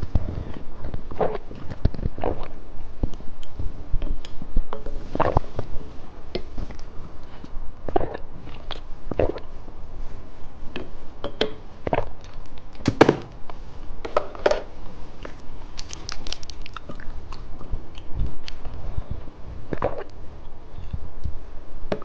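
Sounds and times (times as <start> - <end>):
person chewing crunchy candy: 15.8 - 18.2.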